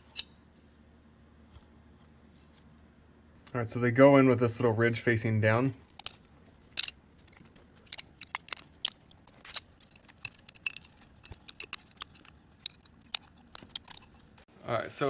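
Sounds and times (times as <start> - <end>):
clicks of small hard parts: 5.8 - 6.2, 6.8 - 14.4.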